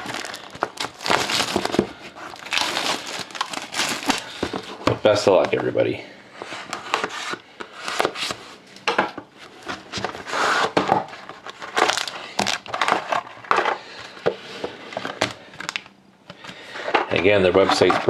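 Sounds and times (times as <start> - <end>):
cellophane crinkling and tearing: 0.0 - 4.7, 11.2 - 13.5.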